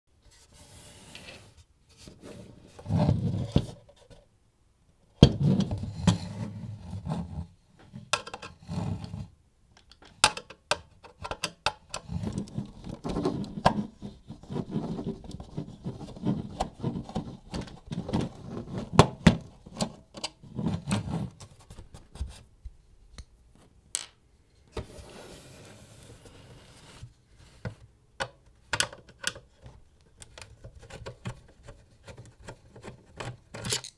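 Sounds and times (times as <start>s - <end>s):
scraping and rubbing: 12.0s - 19.0s.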